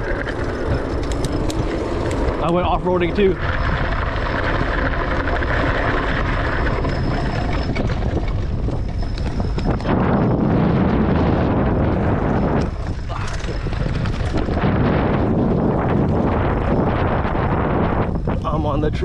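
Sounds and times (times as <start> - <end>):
wind buffeting microphone: 0.0 - 19.0
tyre rumble on dirt: 3.4 - 18.2.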